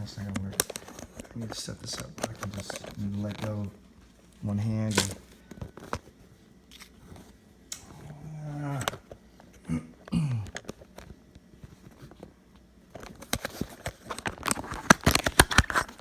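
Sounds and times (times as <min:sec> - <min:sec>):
man grunting: 0:07.9 - 0:09.0.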